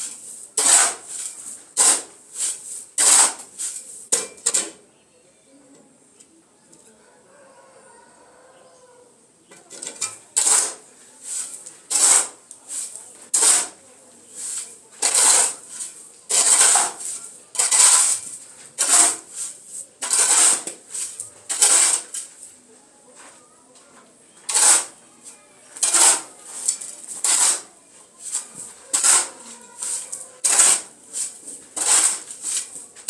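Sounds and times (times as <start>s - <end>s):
hard scraping strokes: 0.0s - 4.8s, 9.8s - 22.6s, 24.4s - 33.0s.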